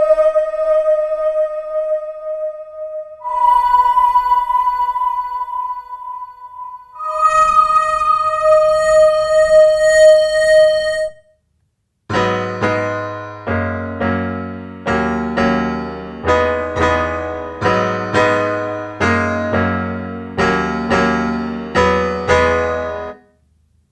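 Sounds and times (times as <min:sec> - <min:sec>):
steady held tone: 0:00.0 - 0:11.3
keyboard chords ringing: 0:03.2 - 0:11.2, 0:12.1 - 0:23.2.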